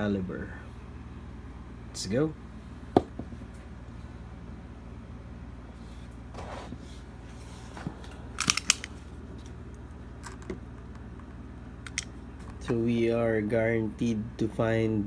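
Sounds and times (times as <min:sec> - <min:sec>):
sharp crackling clicks: 0:08.4 - 0:09.0, 0:11.9 - 0:12.1.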